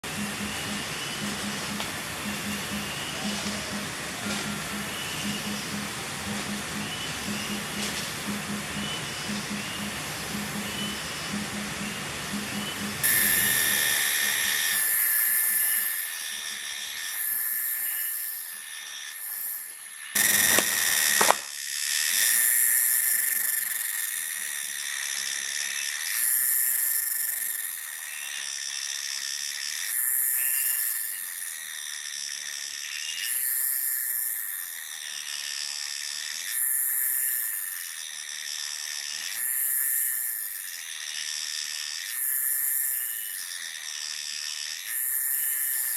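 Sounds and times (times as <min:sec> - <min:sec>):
steady high whine: 0:00.0 - 0:19.0, 0:19.6 - 0:22.4
cicada-like insects shrilling: 0:00.1 - 0:45.9.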